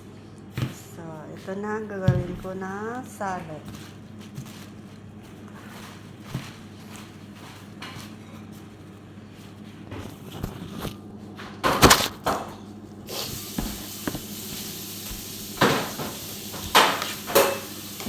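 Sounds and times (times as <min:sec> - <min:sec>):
steady hiss: 0:13.1 - 0:18.0
dishes and utensils knocking: 0:15.5 - 0:18.0.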